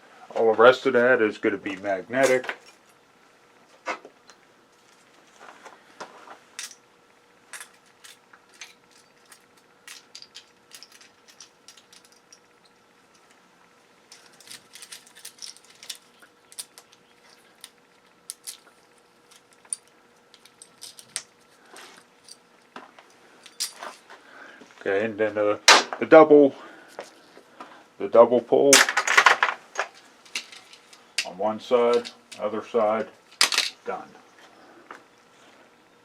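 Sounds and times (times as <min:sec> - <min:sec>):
faint steady hum: 0:00.0 - 0:36.0
small metal parts clicking: 0:06.6 - 0:06.8, 0:07.5 - 0:13.3, 0:14.1 - 0:22.7, 0:23.4 - 0:24.0, 0:28.8 - 0:32.5, 0:33.3 - 0:33.8.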